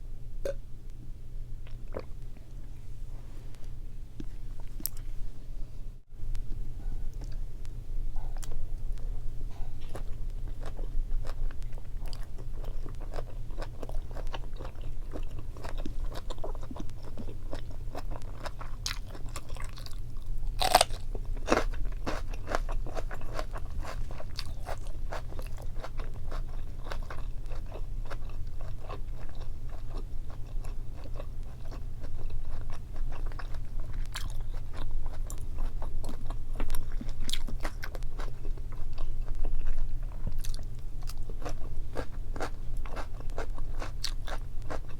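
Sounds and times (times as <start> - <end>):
wet chewing crunches: 9.8 - 44.9.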